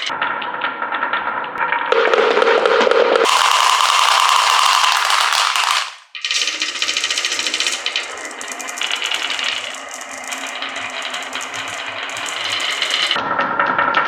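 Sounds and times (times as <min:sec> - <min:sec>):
marbles rattling down wooden run: 0:03.2 - 0:13.2.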